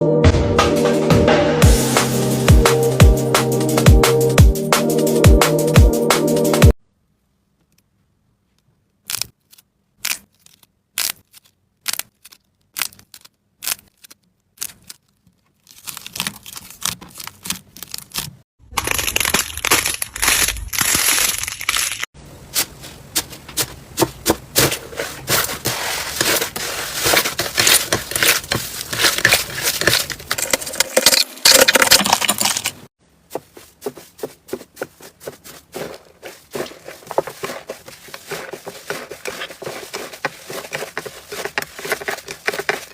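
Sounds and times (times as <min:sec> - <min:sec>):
slime clicking and crackling: 0:10.0 - 0:15.1, 0:15.7 - 0:22.0.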